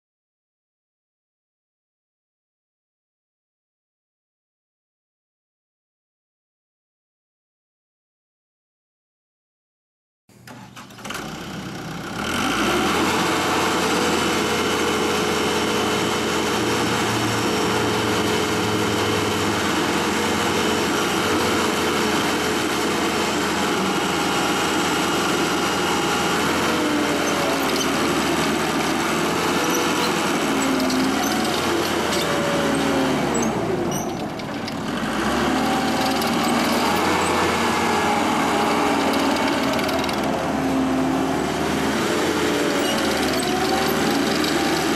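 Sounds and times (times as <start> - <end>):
diesel engine running: 10.5 - 44.9.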